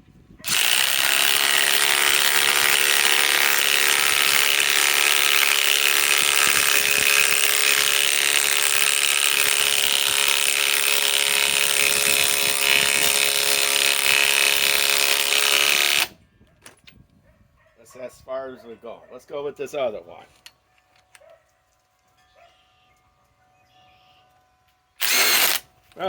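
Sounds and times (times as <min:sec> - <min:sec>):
impact wrench hammering: 0:00.5 - 0:16.1.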